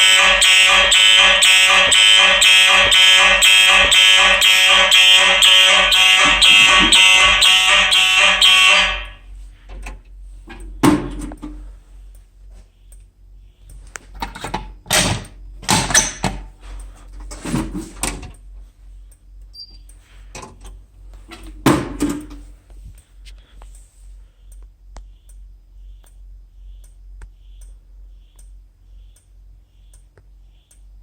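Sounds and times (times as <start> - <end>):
knocks and clicks: 0.0 - 9.0
fire alarm horns buzzing: 0.0 - 9.6.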